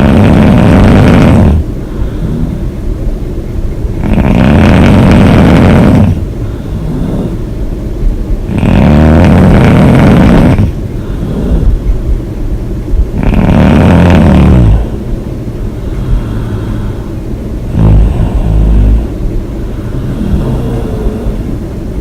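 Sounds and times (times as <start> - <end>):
rough breathing: 0.0 - 2.7, 4.0 - 7.6, 8.5 - 12.0, 15.8 - 21.6
woman snoring heavily: 0.0 - 2.7, 4.0 - 7.5, 8.5 - 11.8, 13.2 - 15.0, 17.7 - 21.6.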